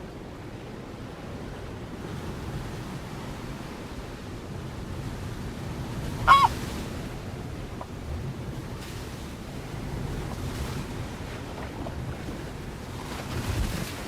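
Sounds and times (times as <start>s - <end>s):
bird call dropping in pitch: 6.3s - 6.5s.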